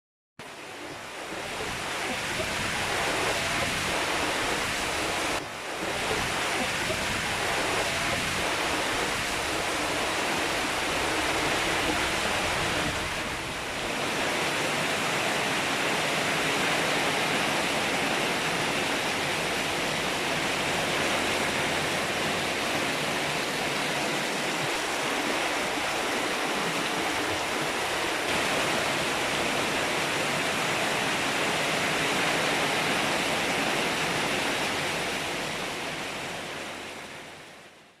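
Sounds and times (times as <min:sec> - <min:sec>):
heavy rain with wind: 0:00.4 - 0:38.0.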